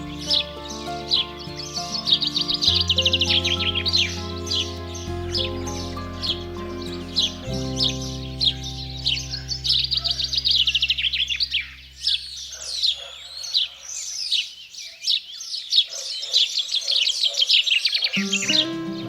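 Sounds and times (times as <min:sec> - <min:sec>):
soft background music: 0:00.0 - 0:12.1, 0:18.2 - 0:19.0
songbirds chirping and twittering: 0:00.0 - 0:19.0.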